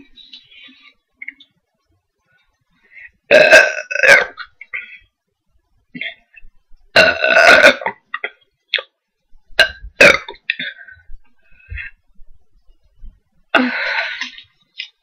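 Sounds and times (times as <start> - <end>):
woman burping: 3.3 - 5.0, 6.9 - 8.9, 9.6 - 11.0.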